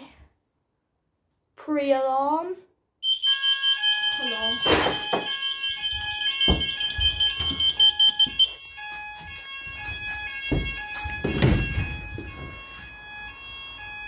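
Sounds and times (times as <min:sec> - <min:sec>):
faint alarm tones: 0:03.0 - 0:14.0
fire alarm high-pitched tone: 0:03.0 - 0:14.0
dull handling thumps: 0:05.9 - 0:08.4.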